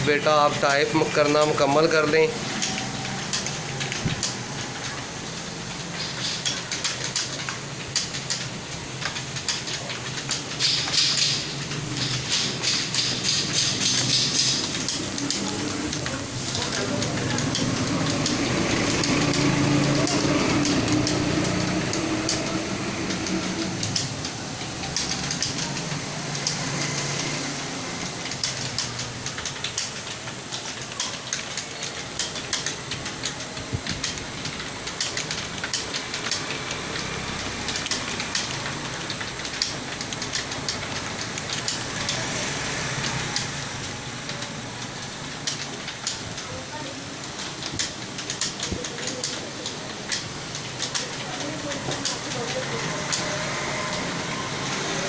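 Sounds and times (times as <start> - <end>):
background murmur: 0.0 - 55.0
keyboard typing: 0.0 - 55.0.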